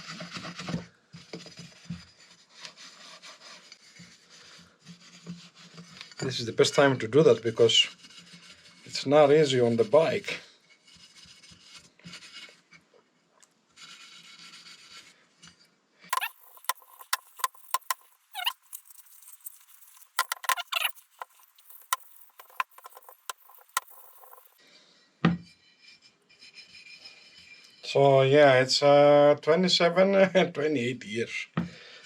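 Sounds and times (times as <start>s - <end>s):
cloth rubbing metal: 16.1s - 24.6s
short squeaks: 16.1s - 24.6s.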